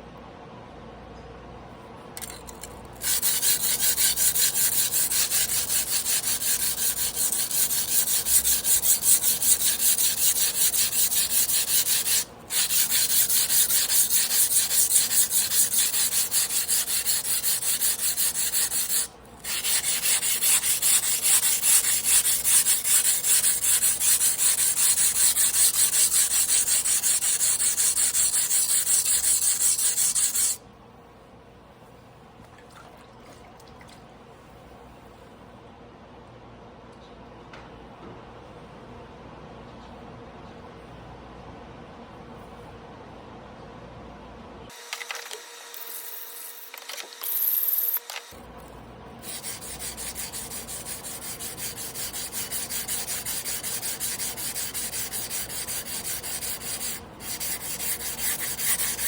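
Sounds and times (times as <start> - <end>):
knife scraping on whetstone: 2.2 - 30.6, 49.2 - 59.0.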